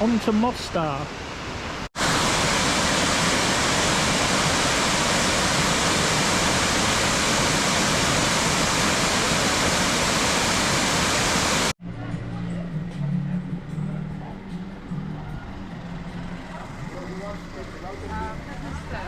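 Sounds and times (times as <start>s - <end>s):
waterfall rushing: 0.0s - 11.8s.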